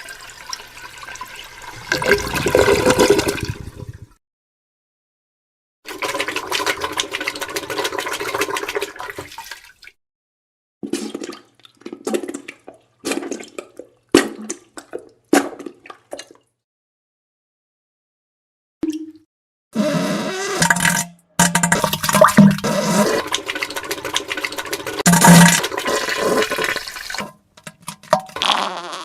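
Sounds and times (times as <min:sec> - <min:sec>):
wet spluttering diarrhea: 0:19.8 - 0:27.3, 0:28.1 - 0:29.0
short farts: 0:28.4 - 0:29.0.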